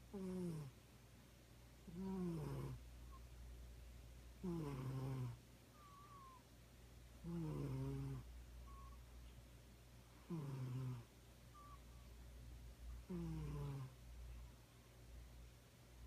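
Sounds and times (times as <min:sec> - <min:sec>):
faint low hum: 0:00.0 - 0:16.0
cat snoring: 0:00.1 - 0:00.7, 0:01.9 - 0:03.2, 0:04.4 - 0:06.4, 0:07.2 - 0:09.0, 0:10.2 - 0:11.8, 0:13.0 - 0:14.0.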